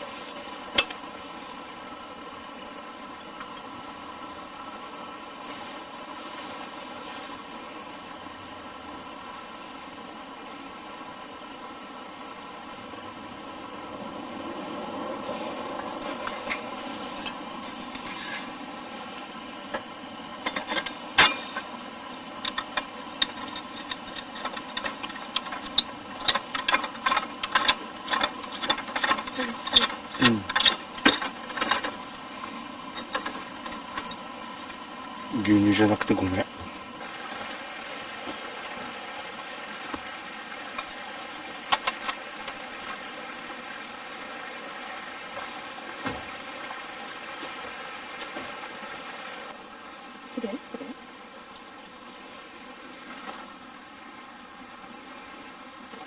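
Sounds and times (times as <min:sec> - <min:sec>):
steady background hiss: 0:00.0 - 0:56.0
utensils and dishes clinking: 0:15.8 - 0:18.7, 0:19.7 - 0:21.8, 0:22.4 - 0:32.2, 0:32.9 - 0:34.3.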